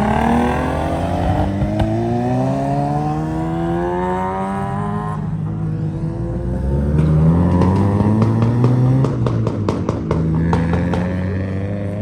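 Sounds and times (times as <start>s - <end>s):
car engine accelerating hard: 0.0s - 9.6s.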